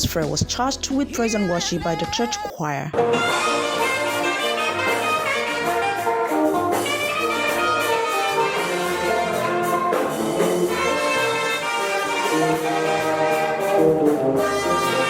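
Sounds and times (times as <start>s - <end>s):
worship music by a band: 3.0s - 15.0s.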